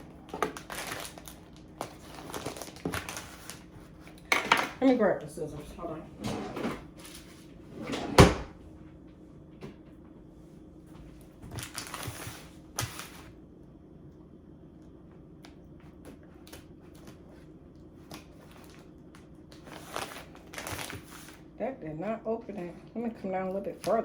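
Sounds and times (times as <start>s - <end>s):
plastic packaging rustling: 0.0s - 4.2s, 11.4s - 13.3s, 19.5s - 21.4s.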